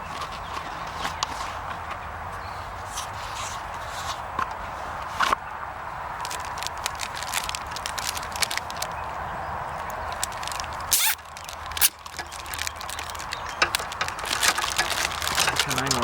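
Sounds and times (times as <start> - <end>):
plastic bag crinkling: 6.1 - 9.1, 10.0 - 16.0.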